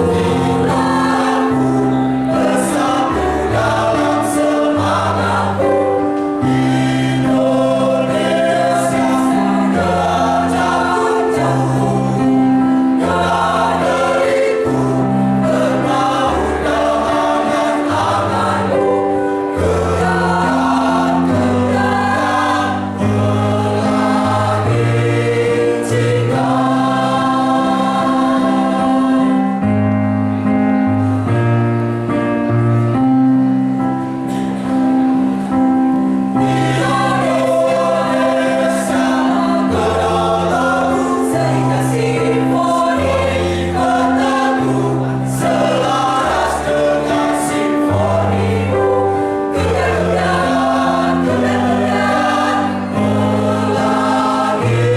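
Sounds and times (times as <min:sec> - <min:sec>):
choir singing in harmony: 0:00.0 - 0:54.9.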